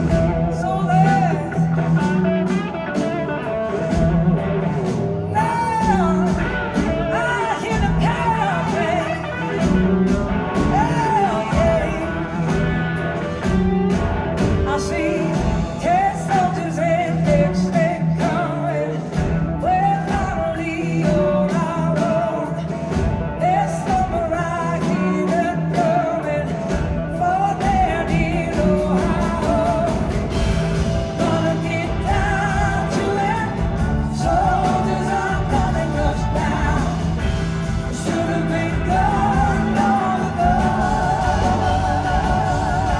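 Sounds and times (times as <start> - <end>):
live rock band playing: 0.0 - 42.9
person singing: 4.8 - 42.9.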